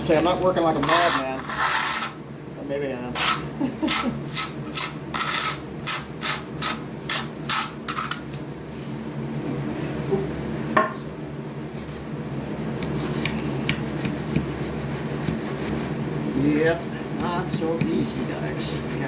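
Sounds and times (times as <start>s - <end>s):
trowel scraping mortar: 0.2s - 2.2s, 3.2s - 8.3s.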